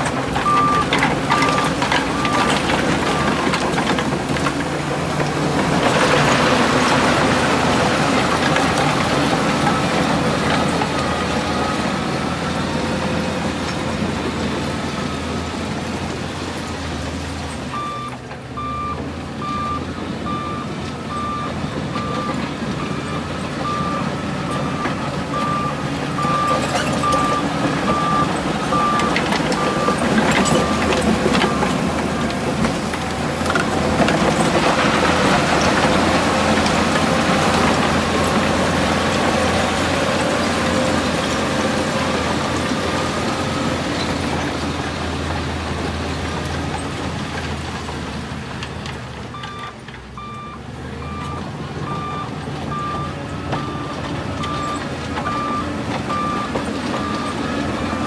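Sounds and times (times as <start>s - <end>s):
heavy diesel machinery engine: 0.0s - 58.0s
reversing alarm beeping: 0.4s - 3.6s, 17.7s - 32.4s, 49.3s - 58.0s.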